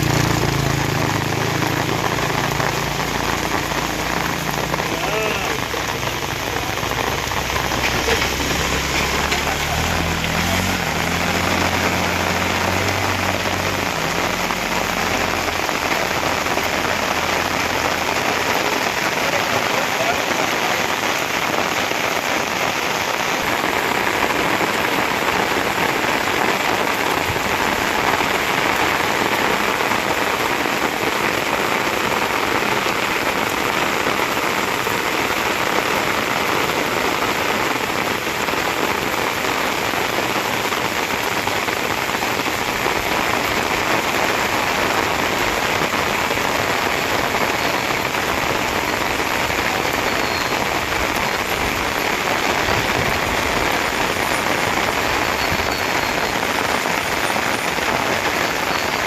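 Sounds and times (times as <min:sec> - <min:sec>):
steady rain falling: 0:00.0 - 0:59.0
low engine hum: 0:06.8 - 0:18.3.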